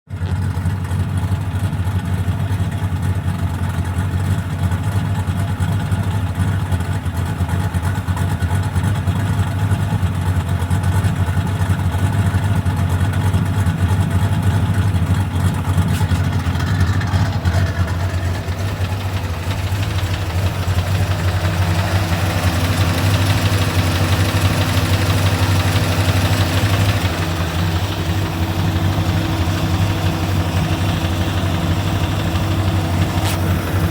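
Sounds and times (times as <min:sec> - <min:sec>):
car engine idling: 0:00.1 - 0:33.9.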